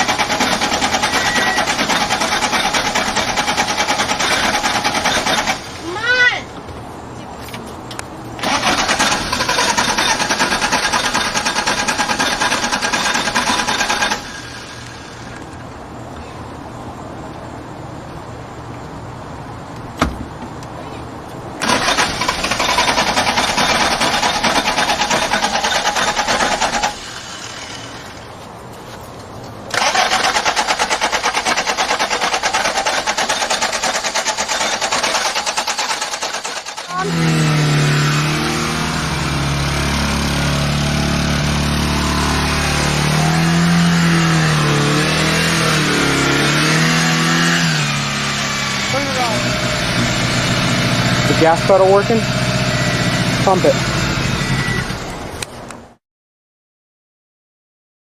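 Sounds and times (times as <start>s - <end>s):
starter motor cranking engine: 0.0s - 5.8s, 8.4s - 15.4s, 21.6s - 28.2s, 29.7s - 55.2s.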